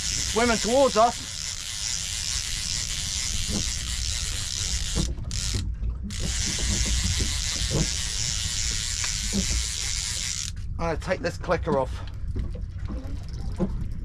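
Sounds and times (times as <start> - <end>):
fishing reel ratchet buzzing: 0.0 - 10.6.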